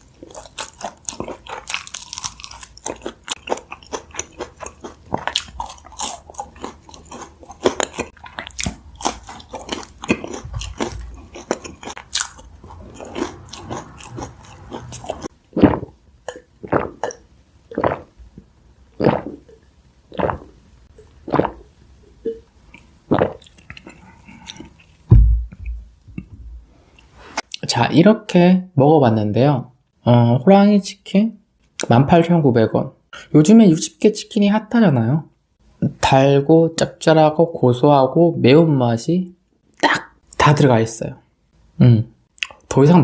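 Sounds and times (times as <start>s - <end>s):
person chewing crunchy food: 0.0s - 21.7s, 22.7s - 25.0s
low thump: 25.1s - 26.7s.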